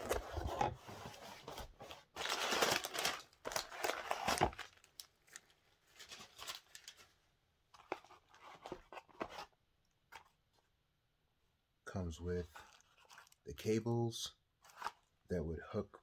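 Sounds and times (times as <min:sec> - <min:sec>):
packaging crinkling and rustling: 0:00.0 - 0:07.2, 0:12.6 - 0:13.4.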